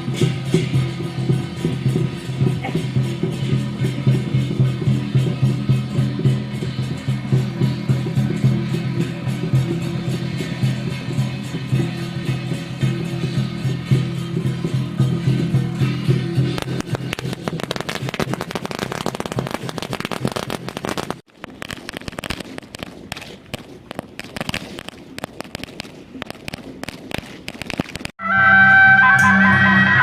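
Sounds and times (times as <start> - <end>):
firecrackers popping: 16.4 - 28.2
loud music: 28.2 - 30.0.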